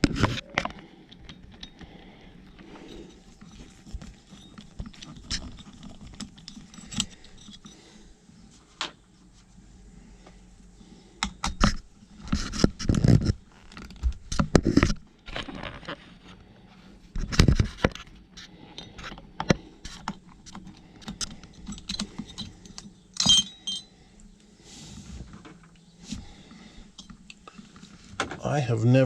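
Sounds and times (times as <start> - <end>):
metal parts and tools clinking: 0.0 - 7.9, 17.2 - 24.0.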